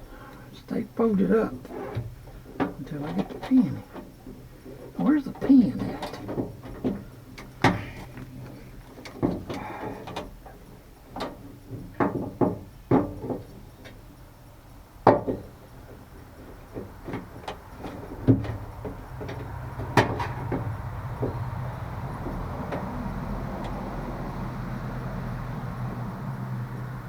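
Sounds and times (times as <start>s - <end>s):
hand tools clicking and knocking: 1.1s - 14.1s.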